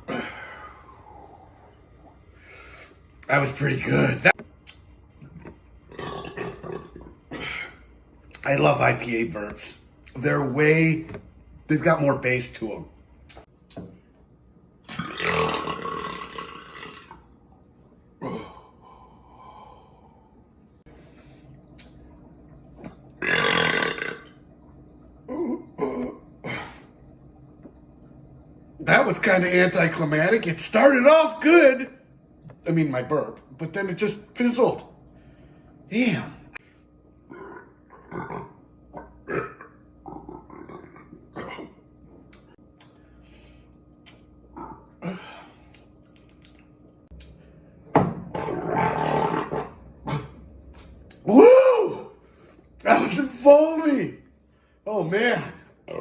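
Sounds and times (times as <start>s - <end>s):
man burping: 0.1s - 0.6s, 3.8s - 4.4s, 5.9s - 7.8s, 14.9s - 17.2s, 18.2s - 18.7s, 23.2s - 24.3s, 25.3s - 26.8s, 39.0s - 41.7s, 44.6s - 45.5s.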